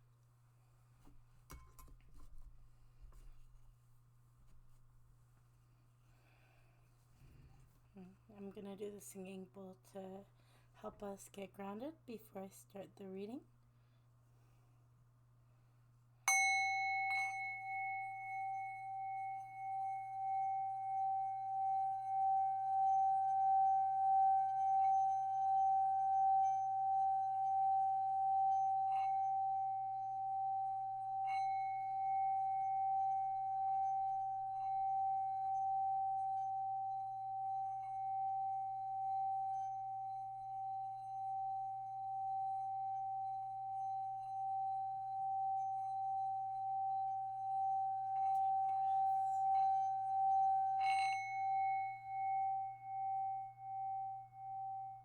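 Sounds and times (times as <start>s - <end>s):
singing bowl ringing: 16.3s - 55.0s.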